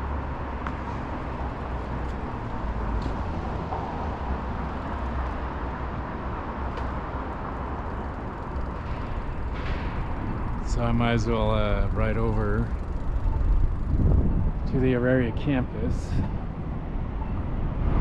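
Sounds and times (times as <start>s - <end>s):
street traffic rumble: 0.0s - 18.0s.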